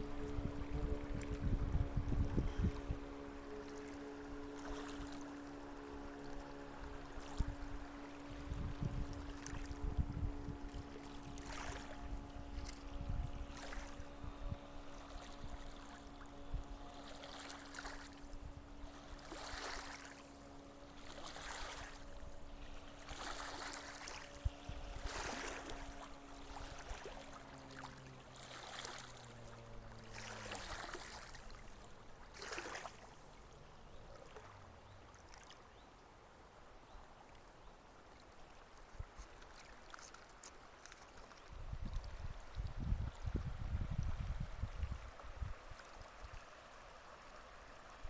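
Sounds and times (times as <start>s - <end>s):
distant motor humming: 0.0s - 38.0s
faint flowing water: 0.0s - 48.0s
river water splashing: 0.0s - 48.0s.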